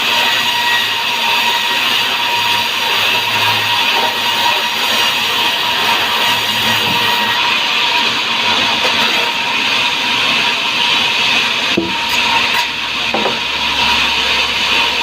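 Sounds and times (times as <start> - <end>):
high whine of saw: 0.0 - 15.0
saw rasping through wood: 0.0 - 15.0.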